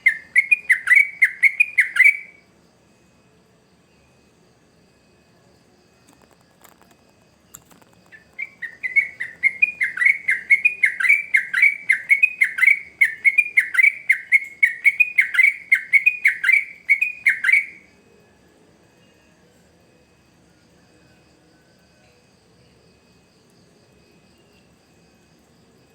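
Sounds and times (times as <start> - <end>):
bird singing whistled notes: 0.0 - 2.4, 7.6 - 17.9.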